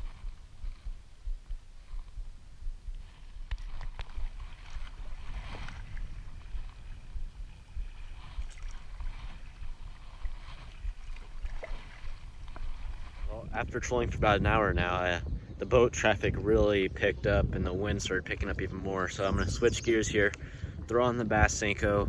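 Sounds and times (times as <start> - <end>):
wind buffeting microphone: 0.0 - 22.0
water splashes: 3.4 - 13.8.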